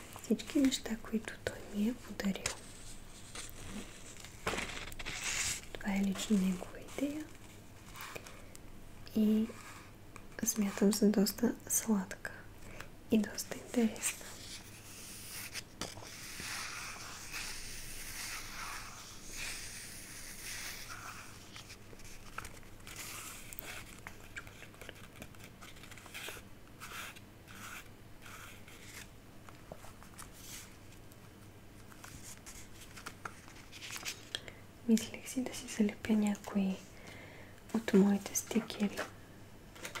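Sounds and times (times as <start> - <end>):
crinkling and rustling: 0.0 - 8.4, 21.0 - 26.4, 28.7 - 34.4, 37.7 - 40.0.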